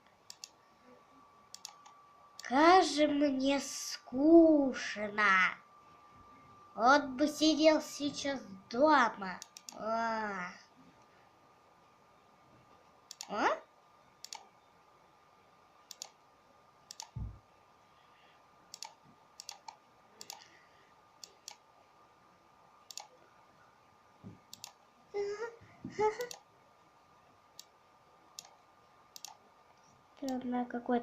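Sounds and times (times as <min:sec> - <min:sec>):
faint high hum: 0:00.0 - 0:31.0
sharp clicks: 0:00.2 - 0:00.6, 0:01.5 - 0:02.5, 0:09.4 - 0:09.8, 0:13.1 - 0:13.3, 0:14.2 - 0:14.5, 0:15.9 - 0:16.2, 0:16.9 - 0:17.3, 0:18.7 - 0:20.5, 0:21.2 - 0:21.6, 0:22.9 - 0:23.2, 0:24.4 - 0:24.8, 0:26.2 - 0:26.5, 0:27.6 - 0:29.4.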